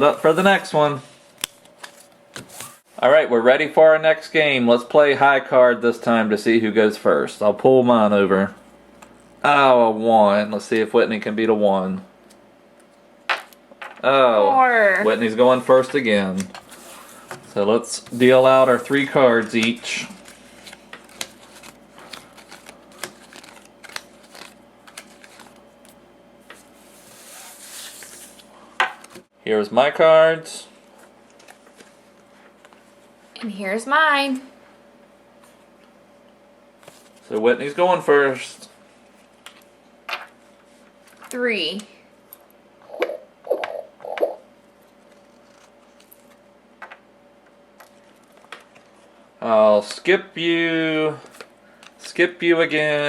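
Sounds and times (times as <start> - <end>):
playing cards dealt on table: 16.4 - 28.5.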